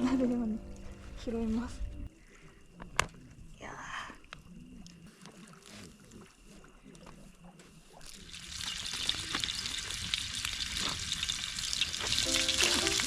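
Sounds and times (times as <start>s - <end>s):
food sizzling in grill pan: 8.3s - 13.0s.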